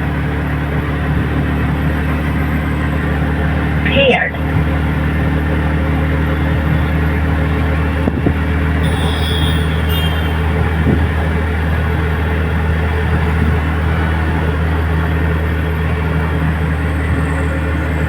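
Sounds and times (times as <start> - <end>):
vehicle engine humming: 0.0 - 18.0
high chirp: 8.8 - 10.8.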